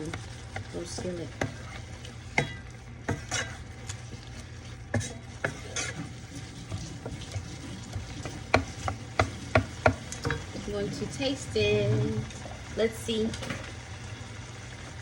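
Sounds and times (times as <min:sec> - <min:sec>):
low sizzle: 0:00.0 - 0:15.0
utensil knocking against pan: 0:08.4 - 0:10.5.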